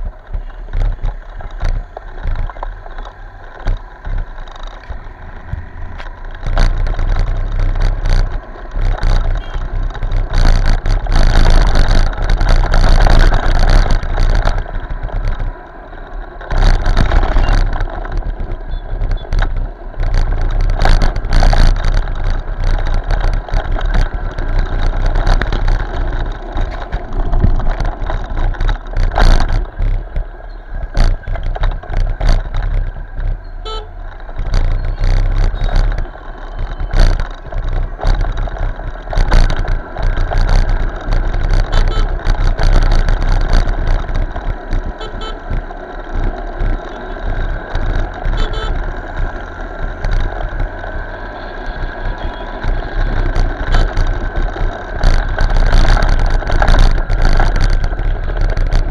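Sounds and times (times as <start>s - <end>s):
knocks and bumps: 0.0s - 50.8s
motorcycle engine rumble: 0.0s - 58.9s
vehicle horns: 9.3s - 9.8s, 33.6s - 34.0s, 41.7s - 42.2s, 44.9s - 45.5s, 48.3s - 48.9s, 51.2s - 54.0s.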